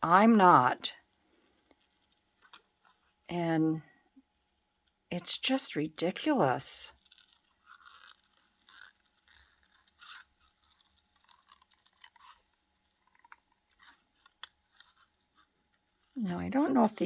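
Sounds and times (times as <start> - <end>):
paper rustling and scraping: 6.9 - 17.0.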